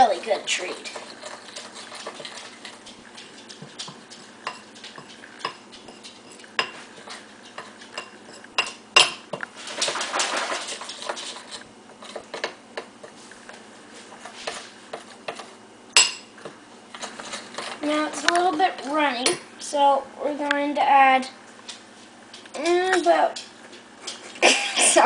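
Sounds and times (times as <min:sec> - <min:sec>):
spoon stirring icing in bowl: 0:00.2 - 0:09.6.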